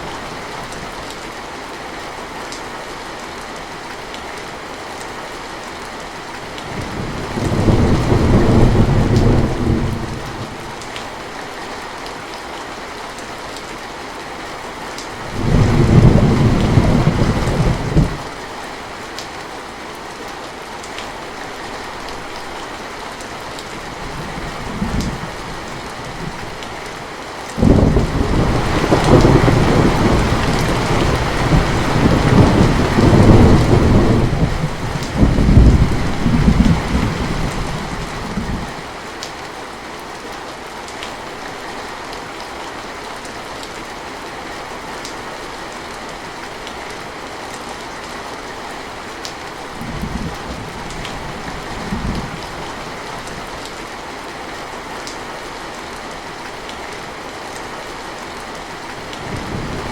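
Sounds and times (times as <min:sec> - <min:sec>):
steady rain falling: 0:00.0 - 0:59.9
thunder rumbling: 0:06.8 - 0:10.7, 0:15.3 - 0:18.2, 0:27.6 - 0:38.8, 0:59.2 - 0:59.9.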